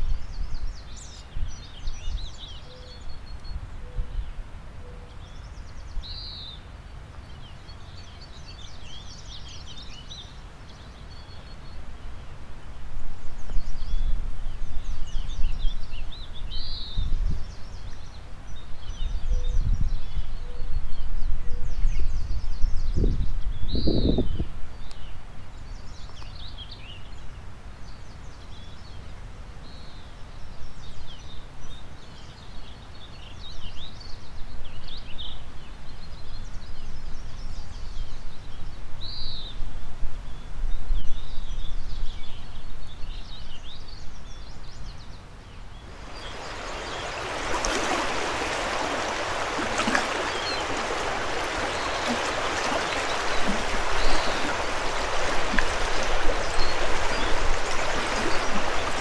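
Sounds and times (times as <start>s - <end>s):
birds chirping and warbling: 45.9s - 59.0s
fast river rushing: 45.9s - 59.0s.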